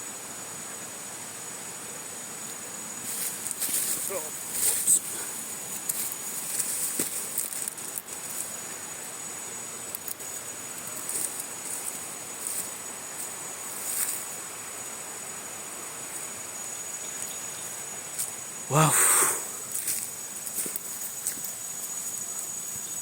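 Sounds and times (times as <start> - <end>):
insects buzzing: 0.0 - 23.0
soft outdoor hiss: 0.0 - 23.0
rustling in vegetation: 0.1 - 18.8, 19.4 - 23.0.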